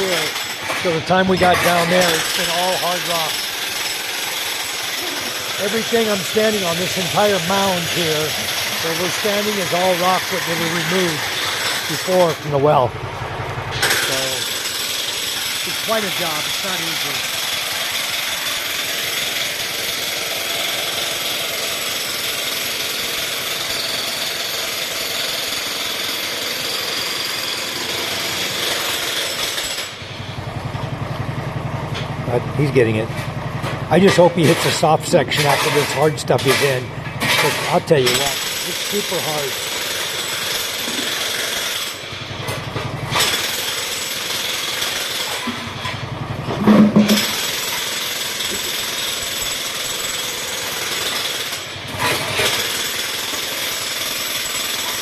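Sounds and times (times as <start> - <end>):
jackhammer breaking rock: 0.0 - 12.9, 13.7 - 30.3, 33.6 - 55.0
engine idling: 4.6 - 19.0, 29.9 - 34.0, 34.6 - 39.8, 41.9 - 43.9, 44.6 - 49.7.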